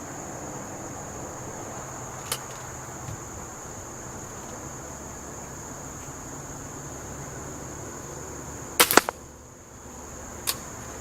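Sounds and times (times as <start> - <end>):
insect chirring: 0.0 - 11.0
sharp click: 8.8 - 9.2, 10.4 - 10.6.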